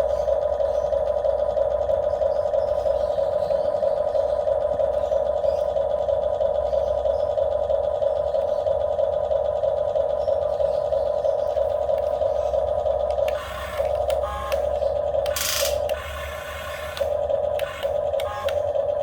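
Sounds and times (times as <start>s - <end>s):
small electric motor whining: 11.4s - 19.0s
clicks: 16.9s - 18.7s.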